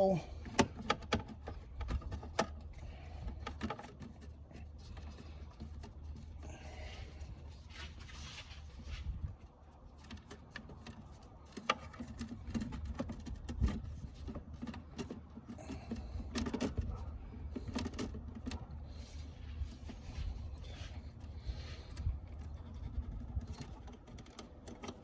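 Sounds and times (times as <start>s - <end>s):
plastic and metal parts clicking: 0.4s - 4.3s, 21.9s - 25.0s.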